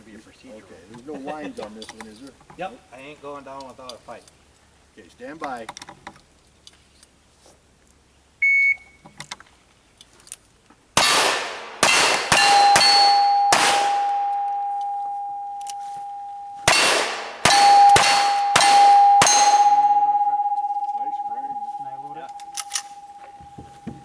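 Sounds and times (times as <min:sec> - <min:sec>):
rapid pistol shots: 0:11.0 - 0:14.5, 0:16.6 - 0:20.1
steel target clanging: 0:11.0 - 0:23.8
steel plate ringing: 0:11.0 - 0:24.0.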